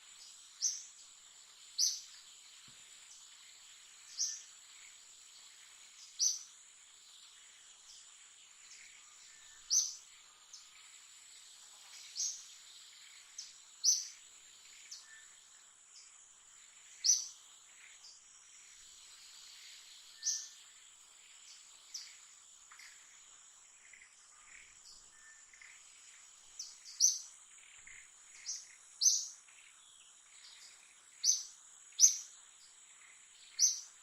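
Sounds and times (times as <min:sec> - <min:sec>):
high-pitched insect drone: 0:16.4 - 0:34.0.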